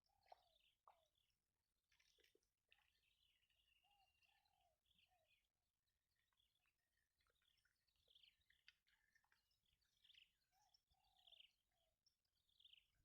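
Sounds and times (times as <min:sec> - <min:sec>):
faint bird calls: 0:02.8 - 0:05.5, 0:07.2 - 0:11.9.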